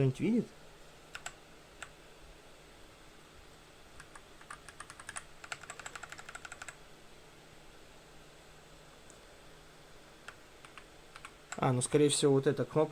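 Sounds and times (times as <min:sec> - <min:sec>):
mechanical keyboard keystrokes: 0:04.0 - 0:06.8.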